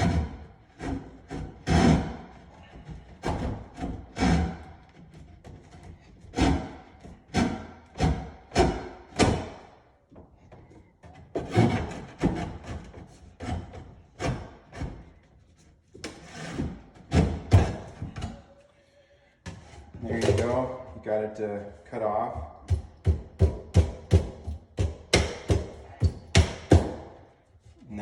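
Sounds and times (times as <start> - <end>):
hand saw cutting wood: 0.0 - 9.7, 11.0 - 18.1.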